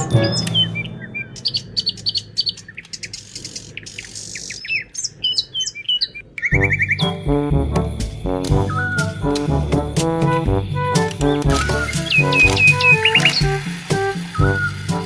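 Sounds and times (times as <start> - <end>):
music: 0.0 - 1.4, 6.6 - 15.0
birds chirping: 0.0 - 15.0.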